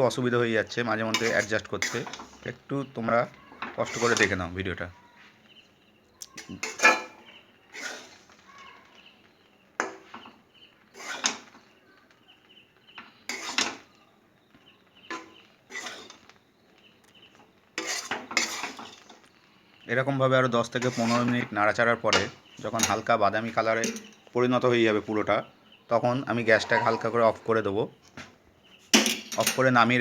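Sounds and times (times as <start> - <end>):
spatula scraping in a pan: 0.9 - 14.0, 14.9 - 24.3, 26.3 - 27.5.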